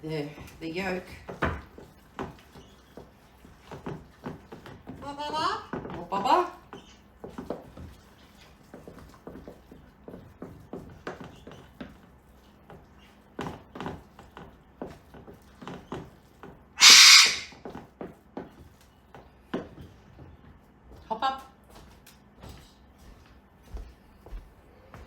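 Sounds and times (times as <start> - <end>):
parrot screeching: 16.8 - 17.5.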